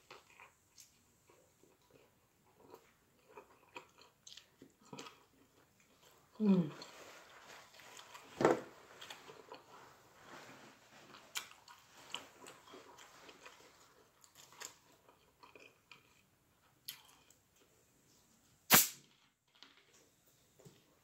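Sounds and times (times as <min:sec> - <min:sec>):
person chewing food: 0:00.0 - 0:17.9
crunchy bite: 0:18.7 - 0:19.0.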